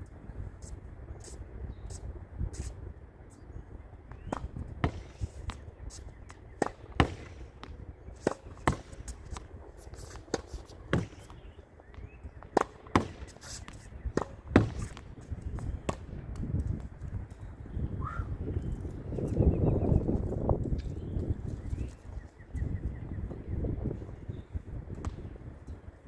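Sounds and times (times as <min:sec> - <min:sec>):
racket striking tennis ball: 0:04.2 - 0:05.6, 0:06.6 - 0:11.4, 0:12.4 - 0:15.2.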